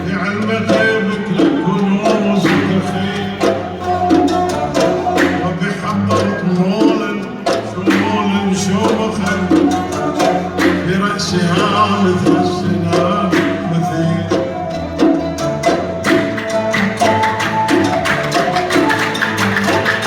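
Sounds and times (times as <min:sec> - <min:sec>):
man chanting: 0:00.0 - 0:14.7
hand percussion beats: 0:00.0 - 0:20.0.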